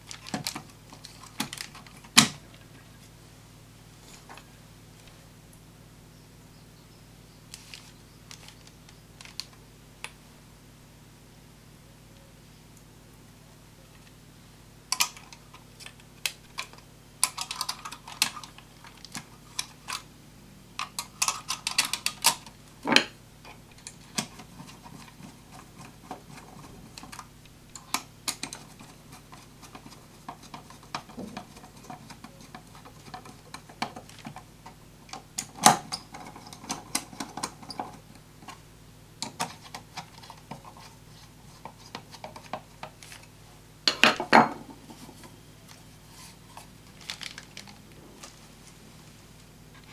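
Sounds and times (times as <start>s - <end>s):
small parts clicking and clattering: 14.9s - 20.1s, 20.8s - 38.6s, 46.6s - 48.4s.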